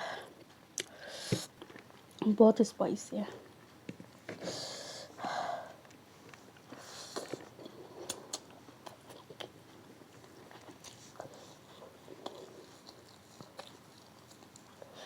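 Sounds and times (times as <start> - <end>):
chewing food: 6.7 - 15.0.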